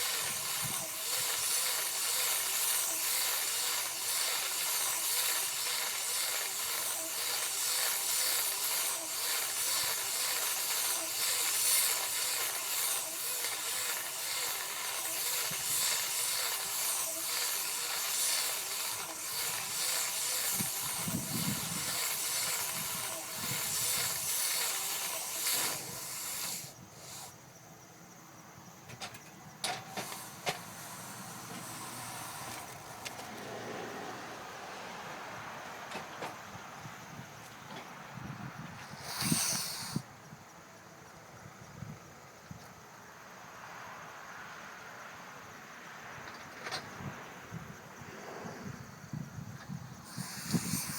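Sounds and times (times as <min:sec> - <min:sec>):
hay baling machinery hissing: 0:00.0 - 0:27.4, 0:28.9 - 0:36.5, 0:37.1 - 0:40.1, 0:48.2 - 0:50.9.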